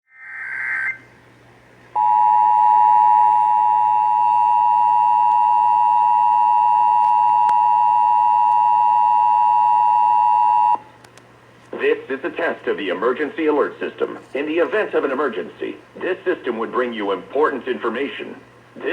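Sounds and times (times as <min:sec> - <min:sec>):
two-tone attention signal: 0:00.1 - 0:01.0
warbling data tones: 0:00.1 - 0:01.1.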